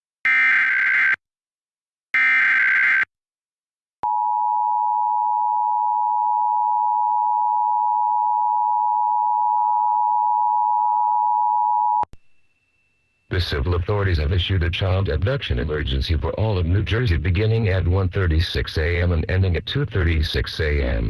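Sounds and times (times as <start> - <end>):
warbling digital data screech: 0.3 - 1.2, 2.2 - 3.1.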